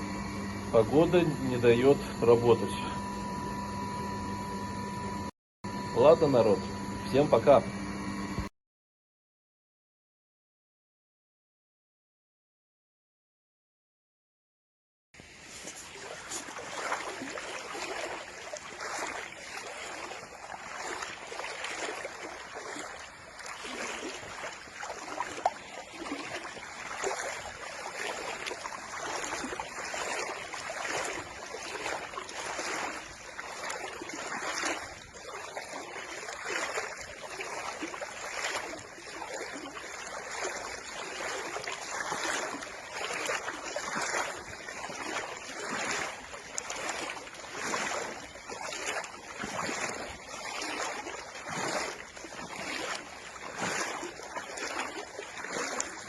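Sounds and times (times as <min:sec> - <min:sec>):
choppy water lapping and splashing: 0:00.0 - 0:03.5, 0:15.2 - 0:56.0.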